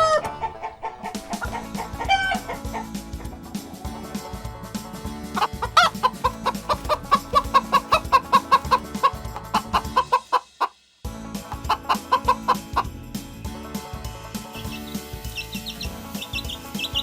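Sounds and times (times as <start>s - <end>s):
chicken clucking: 0.0s - 2.9s, 5.3s - 10.7s, 11.5s - 12.9s
soft background music: 0.0s - 10.4s, 11.1s - 17.0s.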